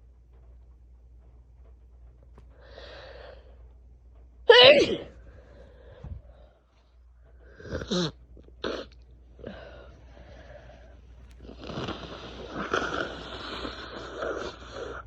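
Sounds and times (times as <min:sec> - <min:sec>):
woman sneezing: 0:04.5 - 0:05.1
sniffing: 0:07.4 - 0:15.0
rough snuffling breath: 0:08.6 - 0:15.0.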